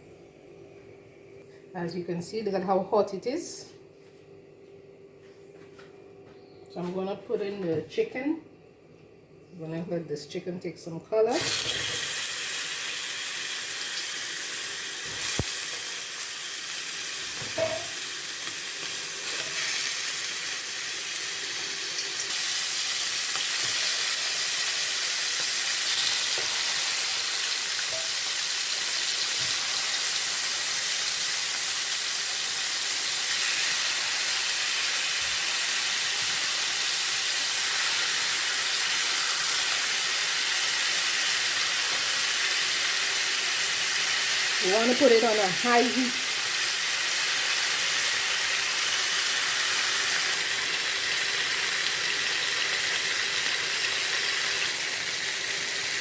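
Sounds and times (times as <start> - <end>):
chicken sizzling in hot oil: 11.3 - 56.0.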